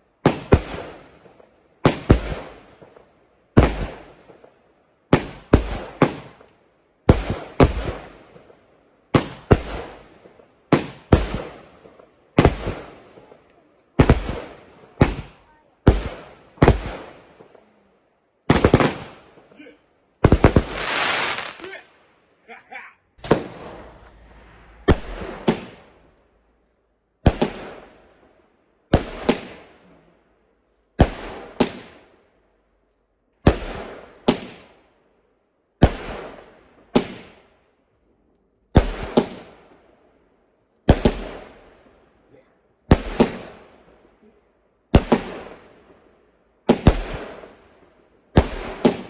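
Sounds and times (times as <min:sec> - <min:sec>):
firework bangs: 0:00.2 - 0:03.0, 0:07.1 - 0:08.5, 0:09.1 - 0:13.4, 0:14.0 - 0:17.6, 0:18.5 - 0:19.5, 0:20.2 - 0:21.8, 0:23.2 - 0:29.8, 0:31.0 - 0:32.1, 0:33.5 - 0:34.8, 0:35.8 - 0:37.5, 0:38.7 - 0:39.8, 0:40.9 - 0:41.9, 0:42.9 - 0:44.0, 0:44.9 - 0:45.9, 0:46.7 - 0:49.0.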